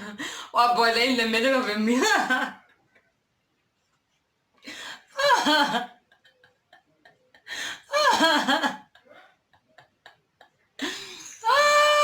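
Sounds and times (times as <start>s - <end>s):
woman laughing: 5.2s - 12.0s.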